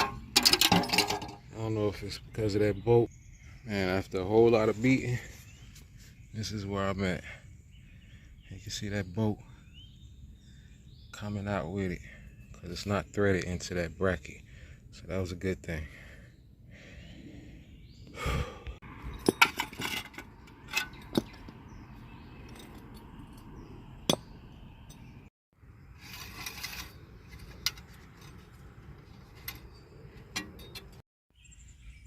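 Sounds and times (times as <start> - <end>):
metal tools clinking: 0.0 - 1.5, 19.0 - 21.6, 22.3 - 25.1, 26.2 - 31.0.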